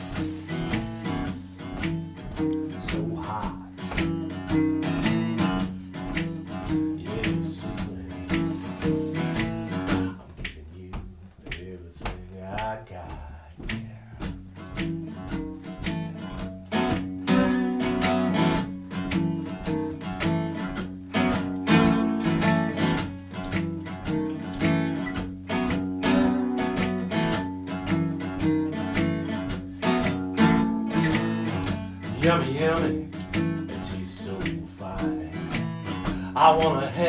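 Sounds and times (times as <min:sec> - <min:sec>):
acoustic guitar strumming: 0:00.0 - 0:37.0.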